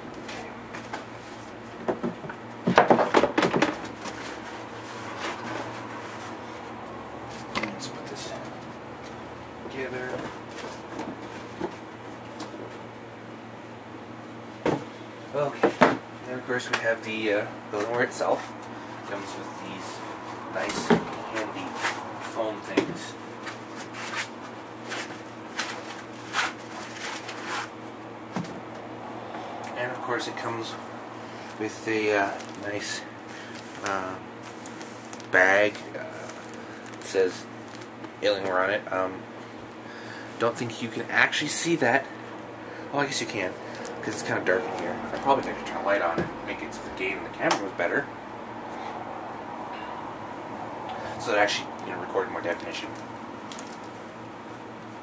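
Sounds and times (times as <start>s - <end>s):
steady low hum: 0.0s - 55.0s
foam packing rustling scrapes: 23.6s - 27.8s.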